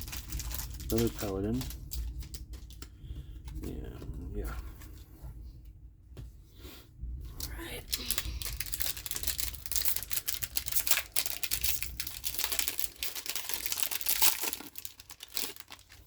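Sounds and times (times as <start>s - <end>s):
wrapper crinkling and tearing: 0.0s - 2.9s, 7.4s - 16.0s.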